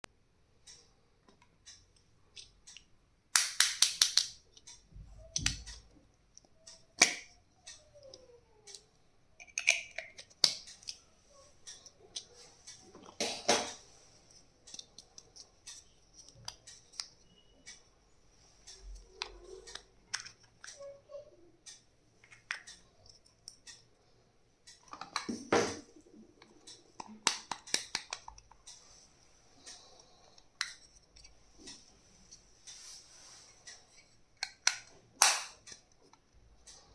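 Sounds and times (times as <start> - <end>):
plastic pieces clicking and tapping: 2.3 - 7.4, 9.4 - 11.0, 26.4 - 28.7.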